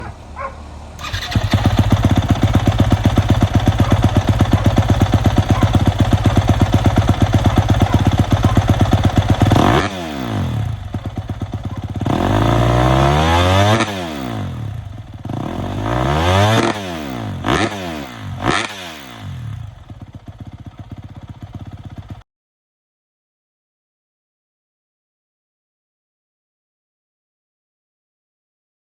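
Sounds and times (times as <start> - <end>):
motorcycle engine revving: 0.0 - 22.2.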